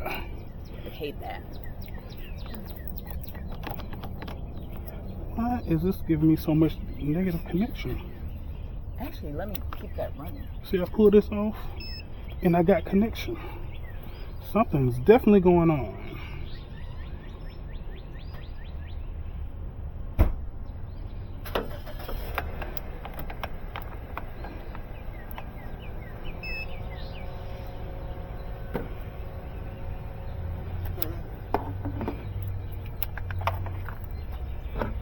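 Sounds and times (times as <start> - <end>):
car engine running: 0.0 - 16.3, 21.5 - 35.0.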